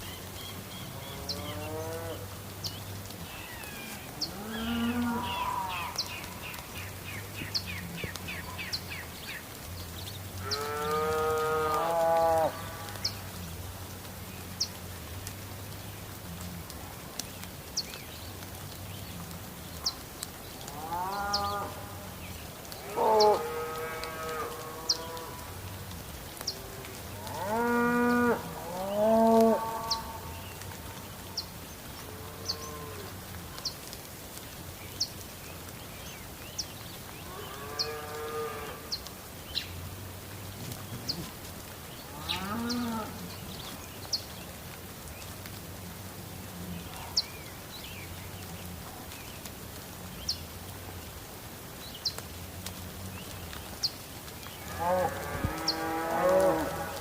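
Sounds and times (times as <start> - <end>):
steady background hiss: 0.0 - 57.0
cattle mooing: 54.7 - 57.0.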